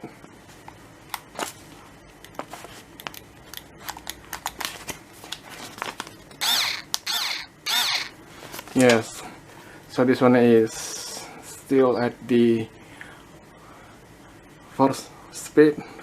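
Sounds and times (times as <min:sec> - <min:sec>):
screwdriver motor whirring: 0:06.4 - 0:08.2.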